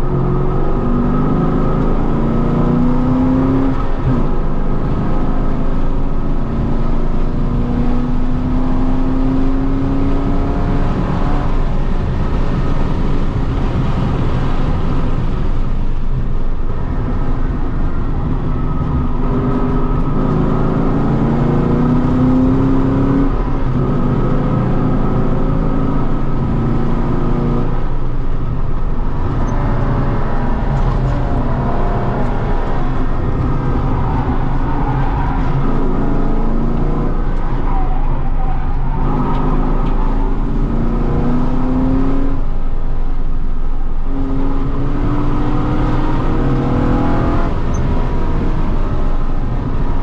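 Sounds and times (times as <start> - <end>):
car engine revving: 0.0 - 50.0.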